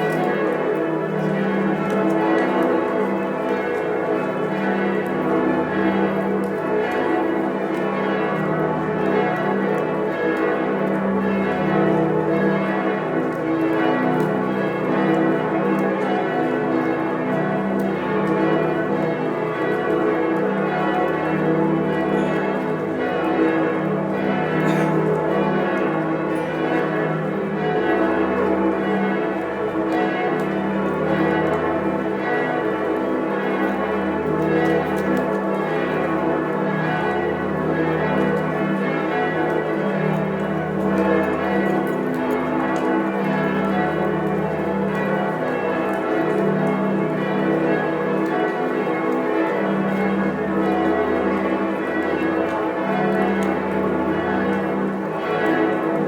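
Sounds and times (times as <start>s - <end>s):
church bells pealing: 0.0s - 56.0s.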